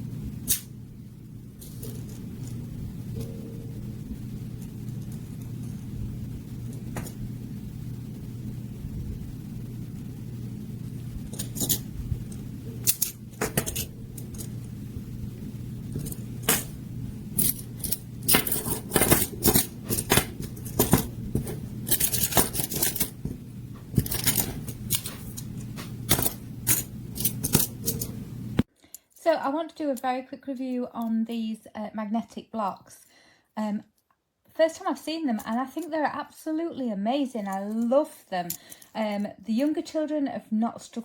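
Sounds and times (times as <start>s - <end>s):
steady low hum: 0.0s - 28.7s.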